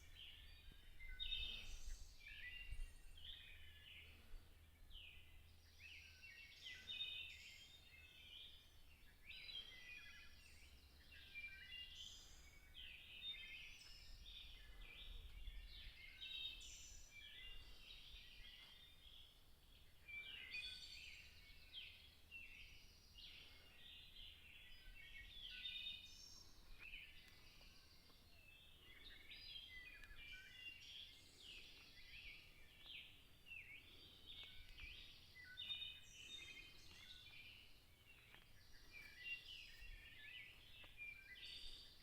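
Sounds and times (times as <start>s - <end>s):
faint songbird dawn chorus: 0.0s - 42.0s.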